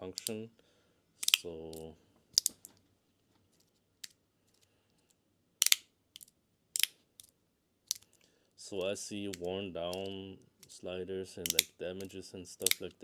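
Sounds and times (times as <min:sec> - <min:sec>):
magnetic slider clicking: 0:00.1 - 0:00.4, 0:01.2 - 0:01.5, 0:05.6 - 0:06.9, 0:11.5 - 0:11.7, 0:12.6 - 0:12.9.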